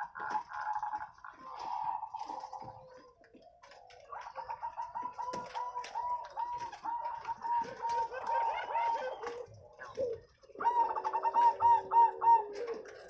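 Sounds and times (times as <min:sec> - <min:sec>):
zebra dove cooing: 0:04.1 - 0:13.0.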